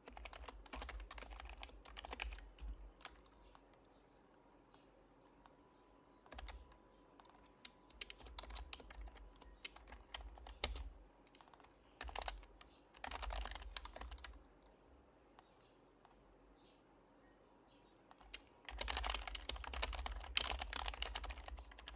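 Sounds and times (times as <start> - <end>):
keyboard typing: 0.0 - 3.9, 6.2 - 14.4, 18.1 - 21.9.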